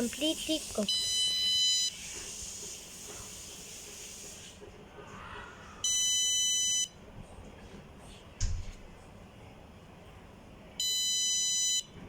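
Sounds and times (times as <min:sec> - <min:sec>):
electronic buzzer beeps: 0:00.9 - 0:02.0, 0:05.8 - 0:07.0, 0:10.8 - 0:11.9.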